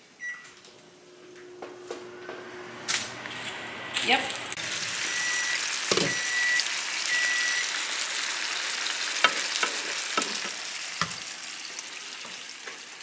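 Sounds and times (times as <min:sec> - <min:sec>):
microwave timer beeps: 0:00.2 - 0:02.8, 0:04.6 - 0:07.9
meatballs sizzling in a frying pan: 0:04.6 - 0:13.0.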